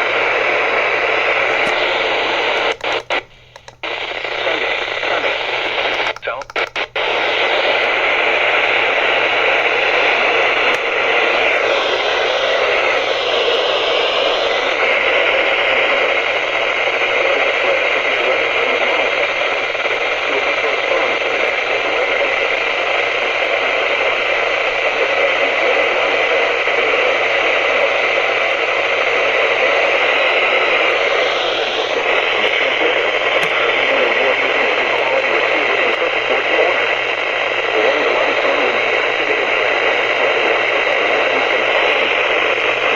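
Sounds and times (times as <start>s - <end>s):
faint wavering radio signal: 0.0s - 42.9s
radio static hiss: 0.0s - 42.9s.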